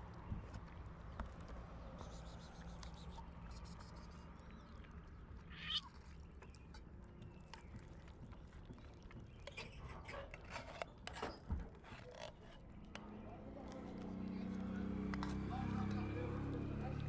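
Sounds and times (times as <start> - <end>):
kitten meowing: 5.5 - 5.9
faint clicks and rustles: 5.9 - 15.5.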